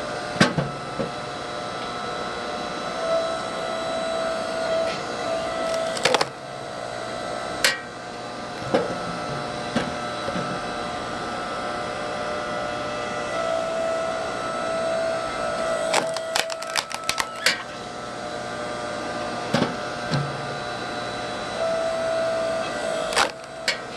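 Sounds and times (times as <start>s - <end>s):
log splitter motor hum: 5.6s - 6.4s, 15.9s - 17.8s, 22.9s - 23.9s
firewood cracking: 5.7s - 6.3s, 15.9s - 17.6s, 23.1s - 23.7s.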